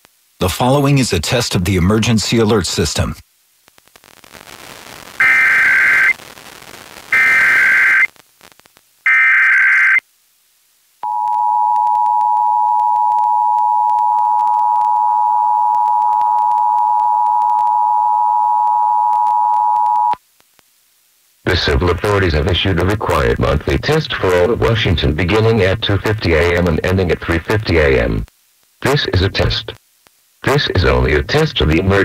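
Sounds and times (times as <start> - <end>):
raspy digital header bursts: 5.2 - 6.1, 7.1 - 8.1.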